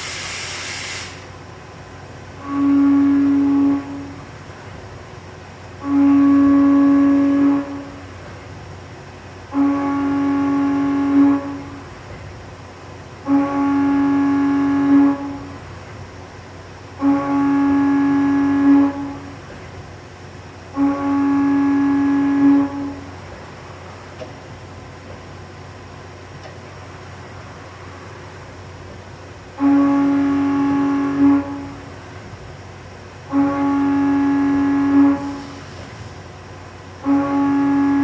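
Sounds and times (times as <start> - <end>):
low buzzing tone: 2.4 - 4.4, 5.8 - 8.3, 9.5 - 12.0, 13.2 - 15.9, 16.9 - 19.6, 20.7 - 24.1, 29.5 - 32.3, 33.3 - 35.5, 37.0 - 38.0.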